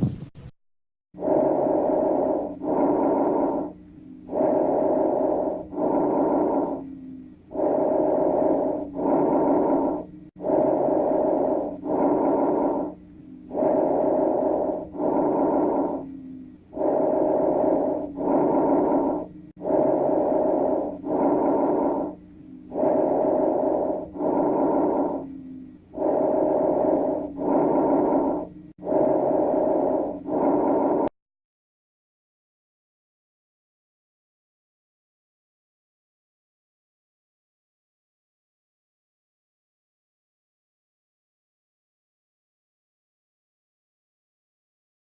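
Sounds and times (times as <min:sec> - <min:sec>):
breathing through stethoscope: 0:01.2 - 0:31.1
continuous musical wheeze tone: 0:01.2 - 0:31.1.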